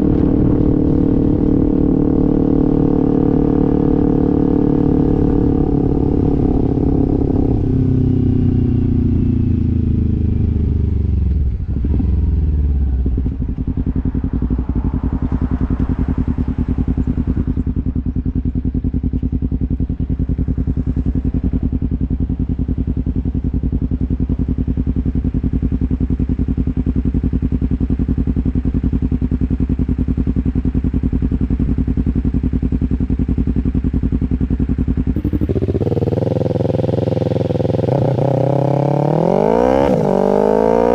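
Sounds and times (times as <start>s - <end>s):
motorcycle engine idling: 0.0s - 40.9s.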